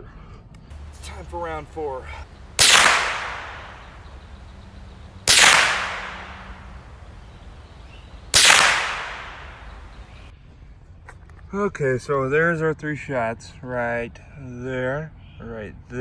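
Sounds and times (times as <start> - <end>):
rifle shots: 0.9 - 10.3.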